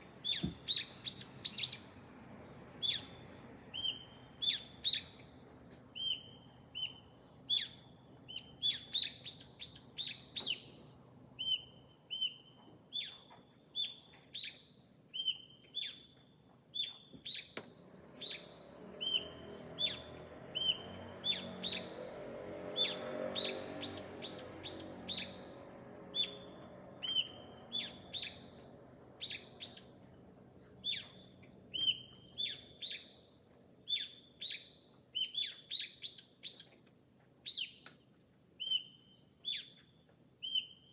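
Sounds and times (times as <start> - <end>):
birds chirping: 18.2 - 22.1, 22.7 - 30.0.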